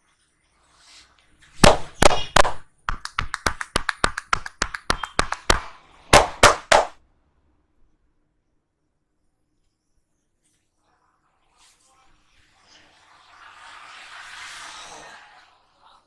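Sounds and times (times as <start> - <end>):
hands slapping head: 1.6 - 7.0
hands tapping head: 1.6 - 7.0.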